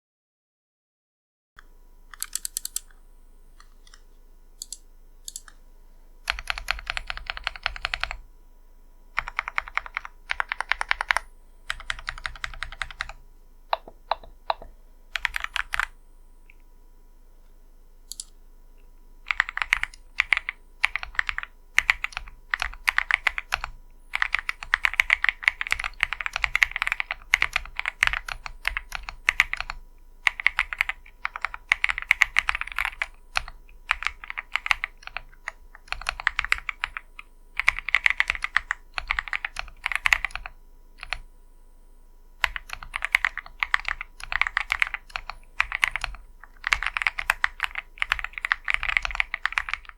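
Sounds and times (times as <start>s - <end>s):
typing on mechanical keyboard: 2.2s - 2.9s, 4.6s - 5.5s, 6.3s - 8.2s, 9.2s - 15.9s, 19.3s - 41.2s, 42.4s - 49.9s.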